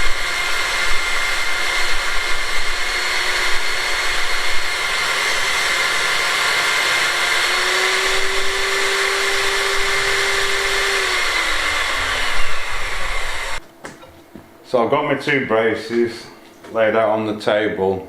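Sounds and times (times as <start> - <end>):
electric saw ripping a board: 0.0 - 13.6.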